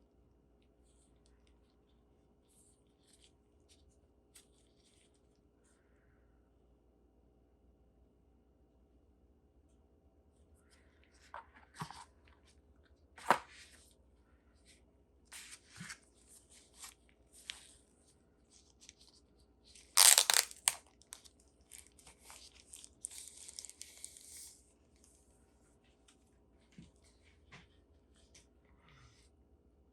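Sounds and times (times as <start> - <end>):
packaging rustling: 19.8 - 24.2
packaging tearing: 19.8 - 24.2
packaging crinkling: 19.8 - 24.5.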